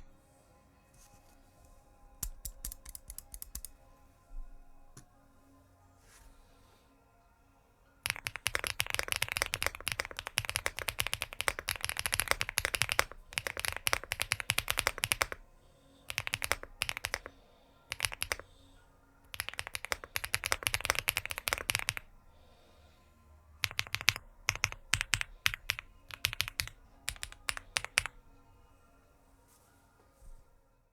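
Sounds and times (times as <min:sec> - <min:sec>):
mechanical keyboard typing: 0:02.2 - 0:03.8, 0:08.1 - 0:15.4, 0:16.1 - 0:17.3, 0:17.9 - 0:18.5, 0:19.3 - 0:22.1, 0:23.6 - 0:28.2.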